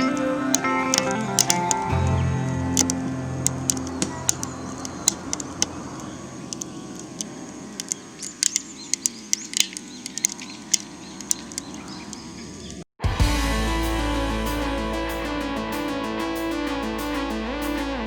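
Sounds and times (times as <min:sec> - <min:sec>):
wood fire crackling: 0:00.0 - 0:11.8.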